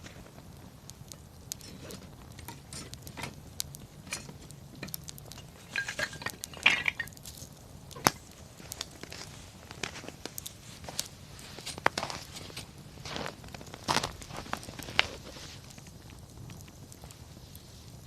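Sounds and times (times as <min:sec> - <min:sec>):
bonfire crackling and popping: 0:00.0 - 0:18.0.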